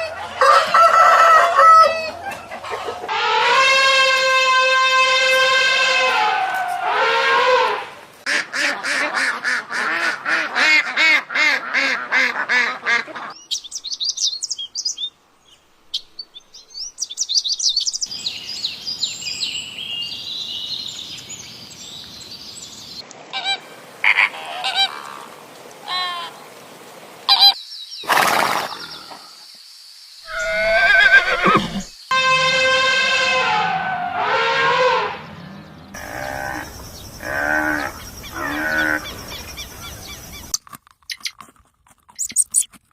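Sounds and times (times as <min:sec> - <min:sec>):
fowl calling: 0:00.0 - 0:13.4, 0:30.3 - 0:40.6
high chirping: 0:42.2 - 0:42.7.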